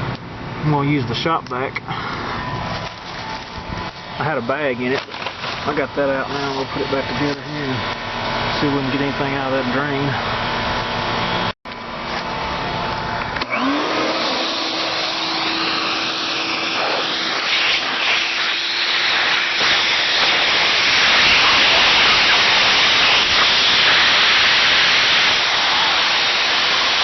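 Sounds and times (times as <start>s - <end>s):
shop vacuum motor running: 1.8s - 27.0s.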